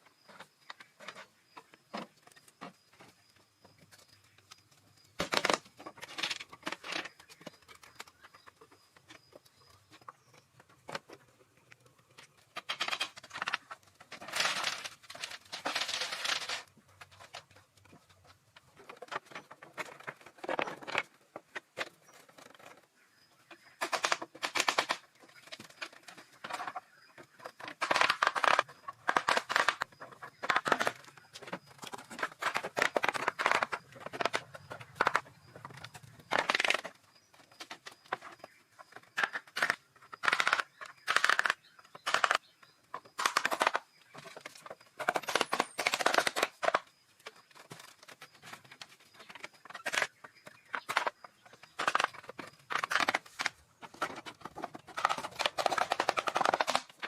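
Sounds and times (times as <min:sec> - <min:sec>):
scraping and rustling: 0:12.0 - 0:22.8.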